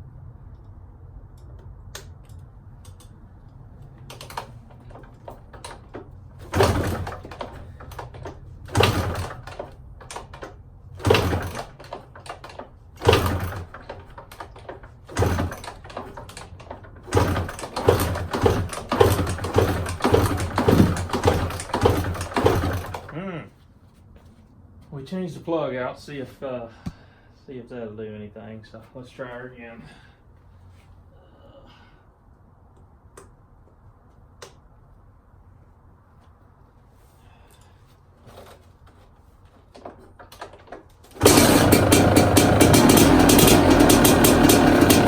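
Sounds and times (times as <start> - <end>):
motorcycle kick-start strokes: 4.0 - 23.2, 39.7 - 45.0.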